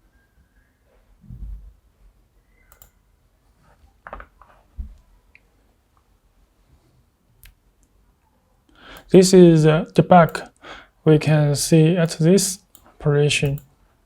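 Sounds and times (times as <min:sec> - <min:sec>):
computer mouse clicking: 0:02.7 - 0:03.0.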